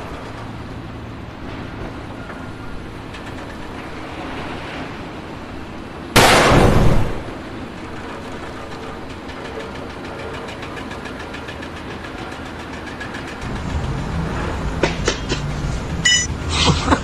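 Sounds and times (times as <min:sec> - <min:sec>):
engine running with rapid knock: 0:07.2 - 0:17.0
sharp knocks: 0:13.4 - 0:16.3.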